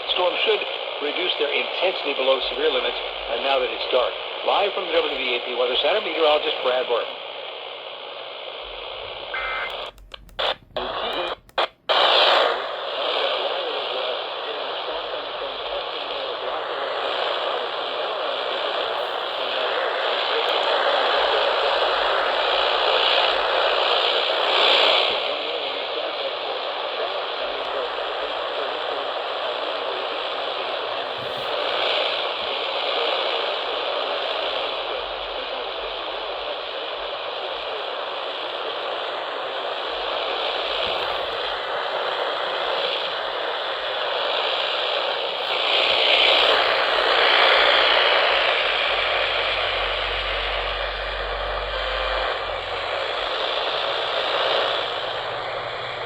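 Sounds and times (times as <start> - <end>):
radio static hiss: 0.0 - 56.0
faint crackles: 8.5 - 23.3.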